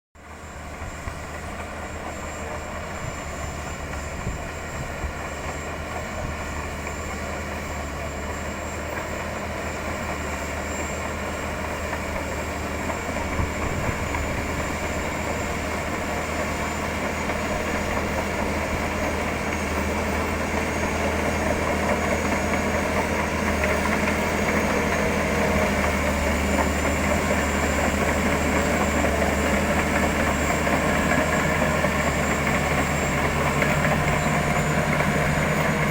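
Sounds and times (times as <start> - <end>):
bulldozer diesel engine running: 0.2 - 35.9.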